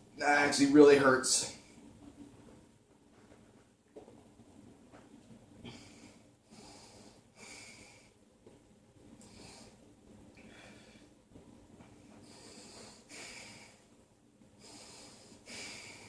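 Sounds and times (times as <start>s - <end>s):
man breathing heavily: 5.6s - 8.2s, 9.2s - 11.3s, 12.0s - 14.0s, 14.6s - 16.0s.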